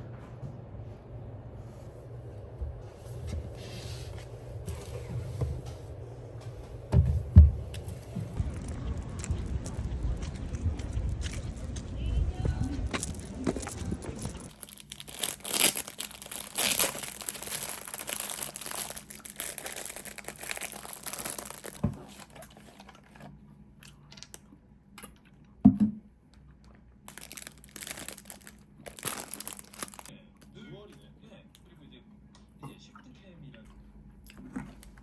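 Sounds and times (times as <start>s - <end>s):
plastic or paper crinkling: 12.8s - 23.2s, 27.1s - 30.1s.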